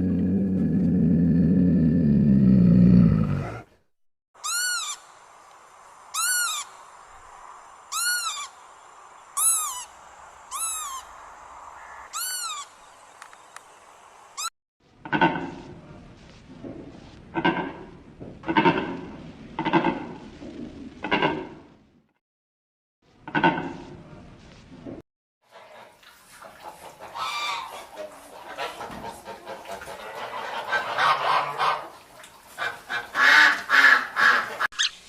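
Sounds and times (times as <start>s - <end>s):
low animal growl: 0.0s - 3.9s.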